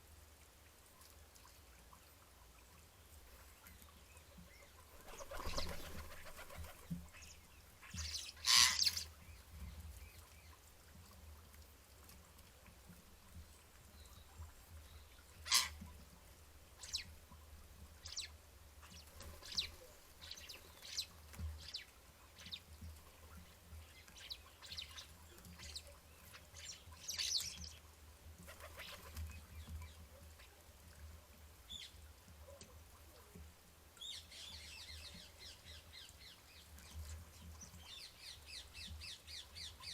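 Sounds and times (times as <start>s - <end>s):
birds chirping: 3.8s - 10.6s.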